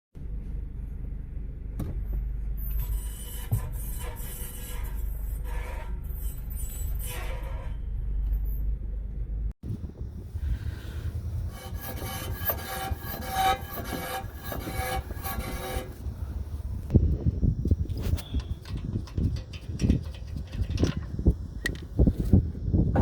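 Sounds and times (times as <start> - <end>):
metallic squeal: 2.6 - 8.7, 11.4 - 16.4
car engine rumbling: 7.9 - 23.0.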